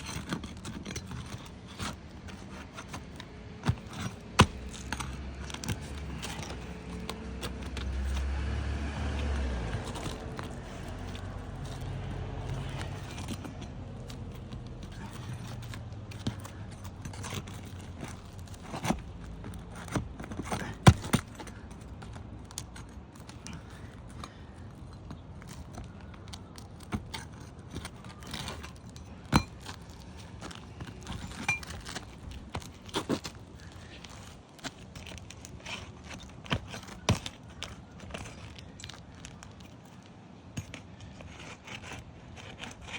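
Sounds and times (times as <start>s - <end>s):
shingles tearing off: 0.0s - 24.6s.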